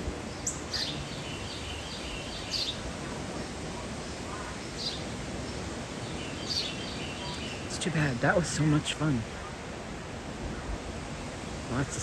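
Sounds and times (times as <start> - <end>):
outdoor background noise: 0.0 - 12.0
small bird chirping: 6.1 - 7.7.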